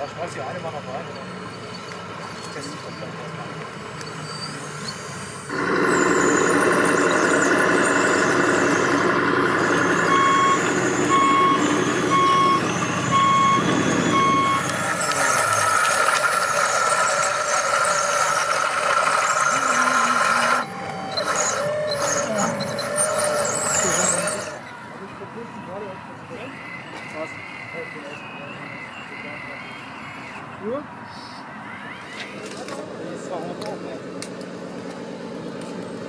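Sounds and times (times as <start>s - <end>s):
tinny diesel truck sounds: 0.0s - 36.0s
reversing beeps: 4.0s - 24.6s
steady high tone: 5.5s - 24.9s.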